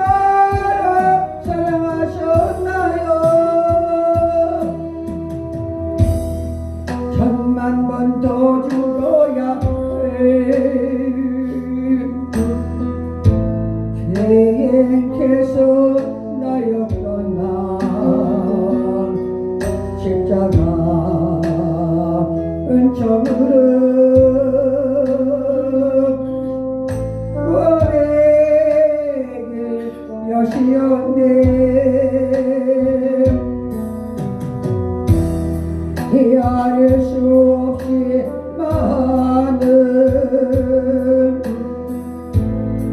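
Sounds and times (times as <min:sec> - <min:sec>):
solo hymn singing: 0:00.0 - 0:05.0, 0:07.2 - 0:12.6, 0:14.1 - 0:26.3, 0:36.1 - 0:41.7
instrumental accompaniment: 0:00.0 - 0:42.9.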